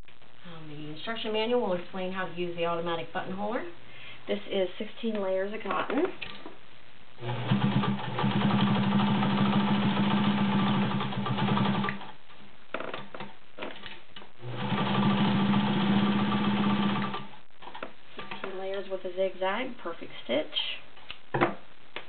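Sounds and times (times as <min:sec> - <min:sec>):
sewing machine running: 0:07.2 - 0:12.1, 0:14.4 - 0:17.3.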